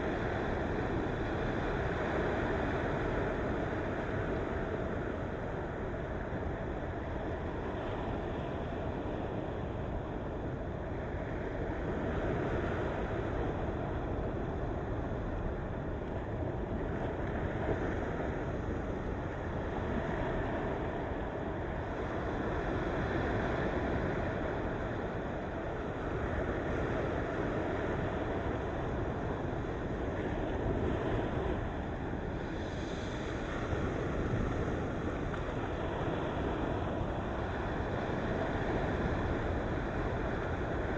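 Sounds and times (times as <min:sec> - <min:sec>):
ocean waves washing on shore: 0:00.0 - 0:40.9.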